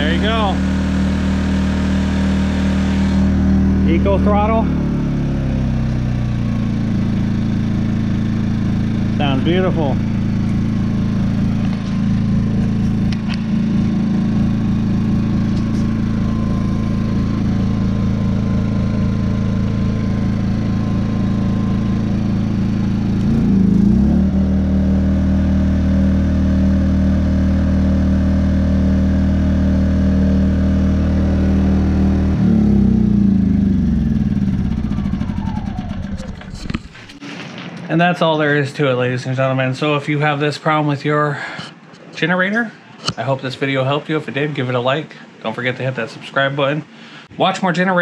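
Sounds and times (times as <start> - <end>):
generator engine running: 0.0 - 37.2.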